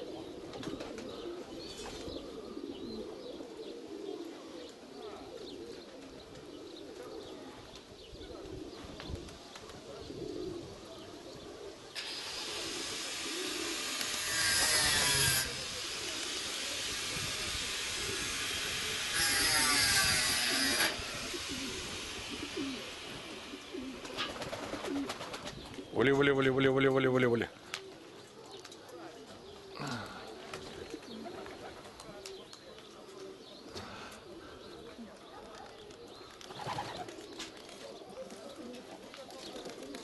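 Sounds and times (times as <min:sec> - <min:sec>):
pigeons cooing: 0:00.0 - 0:40.0
steady hiss: 0:11.9 - 0:24.2.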